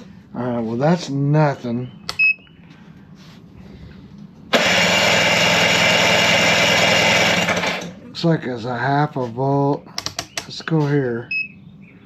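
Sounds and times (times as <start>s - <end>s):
electric starter cranking outboard engine: 4.5s - 8.0s.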